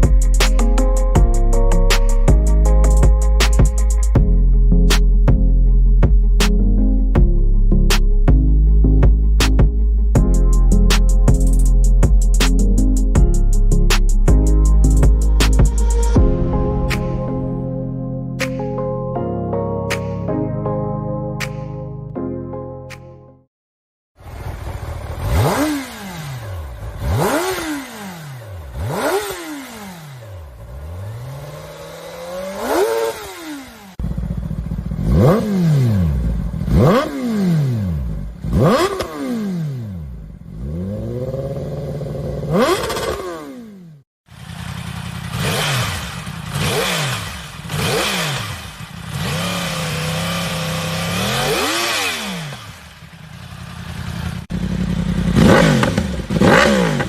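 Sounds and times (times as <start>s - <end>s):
motorcycle engine revving: 24.2s - 57.0s.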